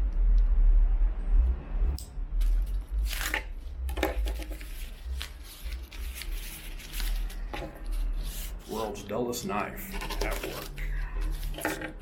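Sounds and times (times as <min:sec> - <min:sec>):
packaging rustling and crinkling: 0:02.4 - 0:08.8, 0:09.9 - 0:12.0
knife scraping packaging: 0:09.9 - 0:12.0.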